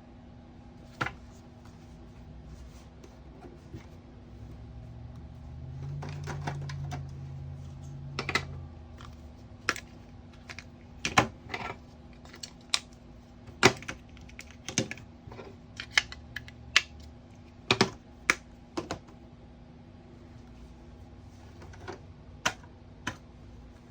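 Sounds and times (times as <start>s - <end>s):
low hum: 0.0s - 13.4s.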